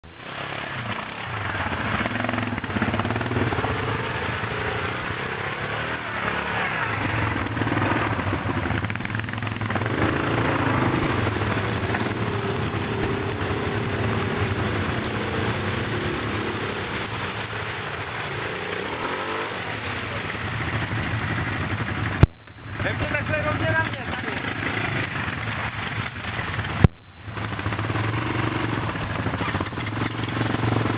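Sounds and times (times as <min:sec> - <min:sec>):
quad bike engine revving: 0:00.2 - 0:30.9.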